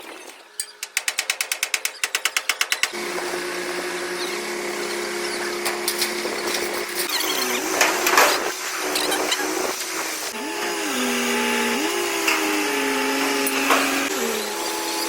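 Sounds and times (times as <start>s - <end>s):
power tool humming: 2.9s - 15.0s.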